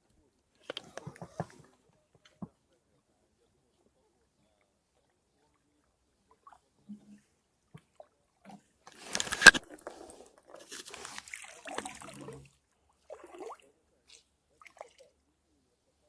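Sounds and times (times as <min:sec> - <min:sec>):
handling rustling and clatter: 0:08.9 - 0:11.3
scraping and rustling: 0:08.9 - 0:11.3.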